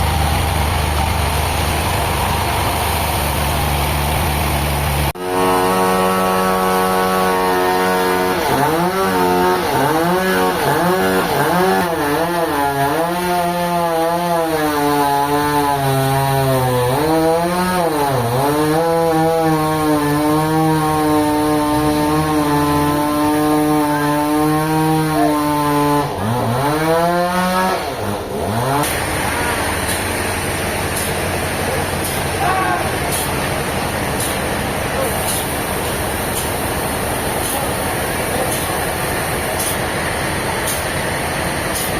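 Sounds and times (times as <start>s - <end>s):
steady machine noise: 0.0s - 12.7s, 27.9s - 41.9s
engine-driven saw cutting wood: 0.0s - 41.9s.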